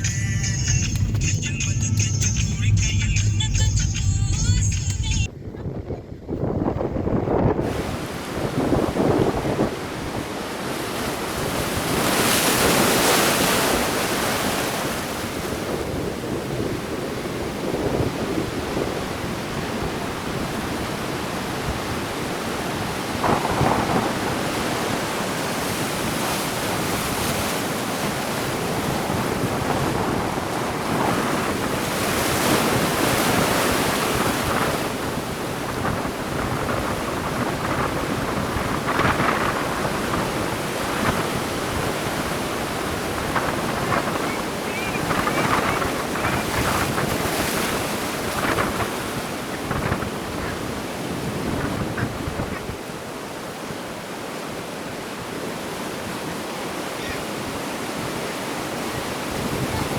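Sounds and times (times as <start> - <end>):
wind rumbling on microphone: 0.0 - 53.0, 58.8 - 59.9
sea waves breaking on shore: 7.5 - 59.9.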